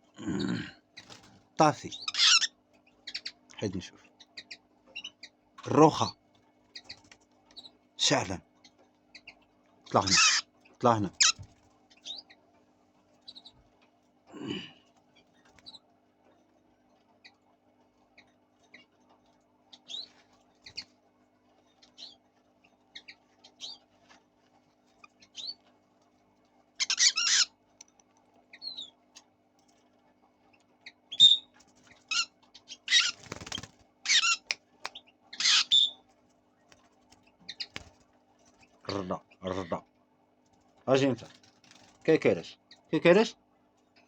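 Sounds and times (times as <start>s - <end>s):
lovebirds chirping: 0.2s - 12.5s, 19.7s - 20.9s, 28.5s - 29.0s, 30.6s - 36.1s, 37.3s - 39.8s.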